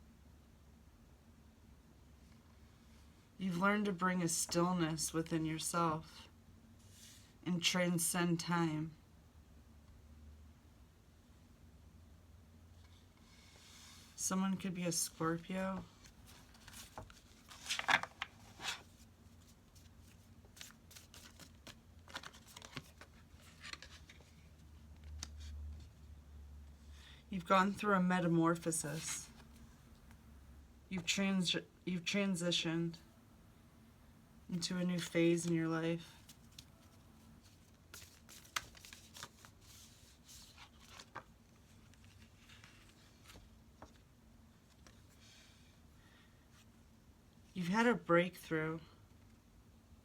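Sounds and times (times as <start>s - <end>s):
low steady hum: 0.0s - 50.0s
cards clicking and rustling: 16.5s - 18.8s, 20.5s - 24.3s, 37.9s - 39.8s.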